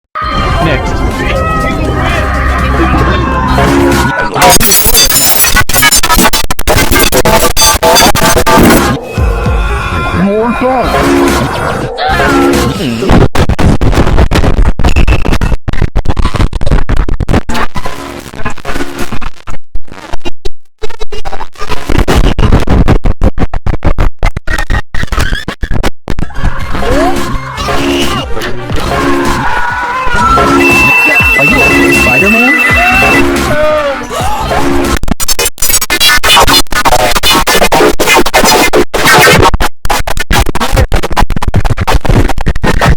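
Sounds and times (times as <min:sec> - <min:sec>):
distorted electronic tones stuttering: 0:00.6 - 0:09.6, 0:10.2 - 0:29.5, 0:30.1 - 0:33.8, 0:34.5 - 0:42.9
distorted stuttering startup jingle: 0:04.4 - 0:09.0, 0:30.3 - 0:33.5.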